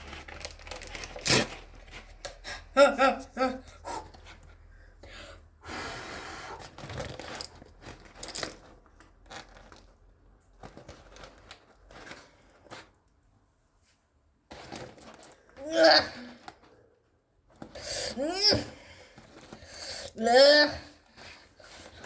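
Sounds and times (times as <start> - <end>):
packaging crinkling: 0.0 - 2.4, 6.7 - 12.9
small clicks and rustles: 0.0 - 2.4, 6.6 - 17.8.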